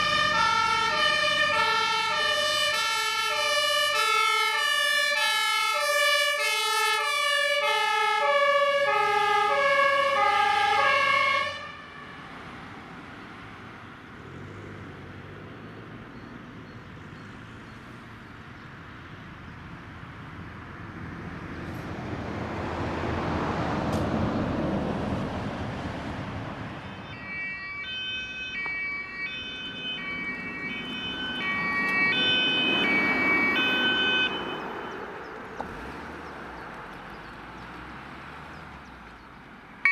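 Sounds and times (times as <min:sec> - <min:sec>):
ambulance two-tone siren: 0:00.0 - 0:13.0, 0:26.5 - 0:35.9
fire engine two-tone siren: 0:00.0 - 0:13.6, 0:26.4 - 0:35.9
vehicle driving past: 0:11.8 - 0:39.4.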